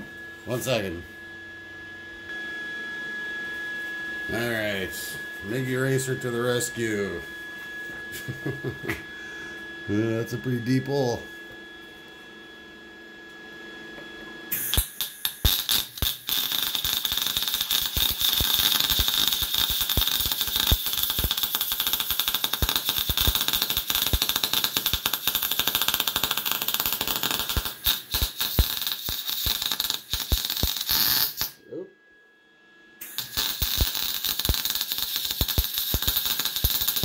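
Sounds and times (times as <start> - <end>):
welding arc crackling: 14.6 - 31.6, 33.0 - 37.0.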